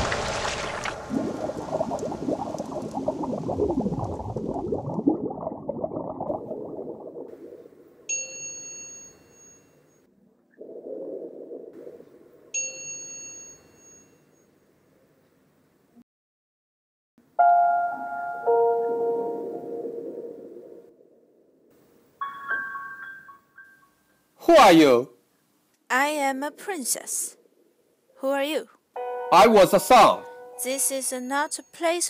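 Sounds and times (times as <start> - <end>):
rain: 0.0 - 5.4
low rumble: 0.0 - 7.8
bell dings: 8.1 - 10.0, 12.6 - 14.5.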